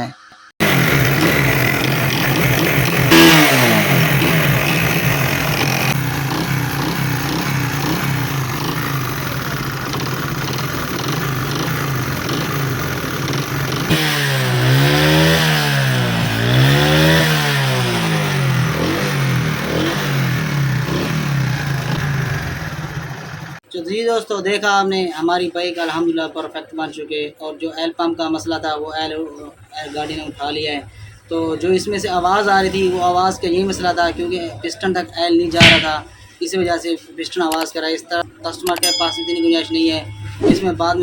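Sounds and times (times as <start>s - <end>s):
motorcycle engine idling and revving: 0.6s - 23.6s
man talking: 23.7s - 41.0s.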